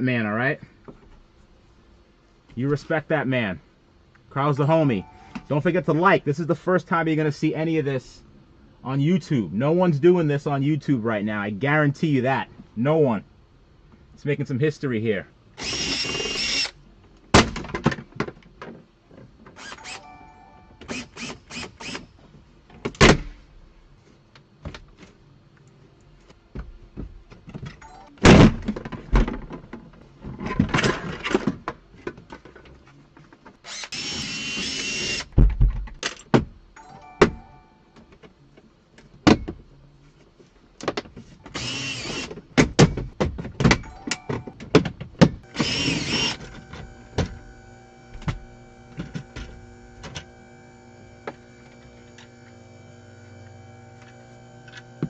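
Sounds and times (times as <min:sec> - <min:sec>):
cordless drill running: 0:15.6 - 0:16.8, 0:20.9 - 0:22.1, 0:33.7 - 0:35.3, 0:41.5 - 0:42.3, 0:45.4 - 0:55.0
knocks and clanks of parts: 0:17.3 - 0:19.6, 0:26.6 - 0:33.6, 0:35.3 - 0:36.6, 0:42.2 - 0:47.4.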